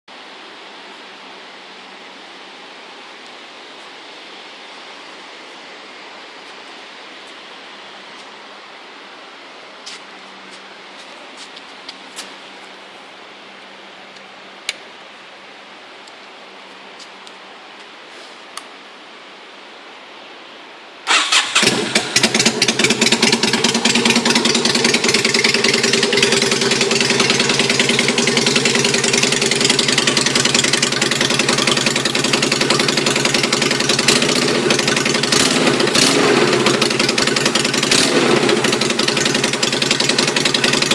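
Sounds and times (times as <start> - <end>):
motorcycle engine idling: 21.1 - 40.9.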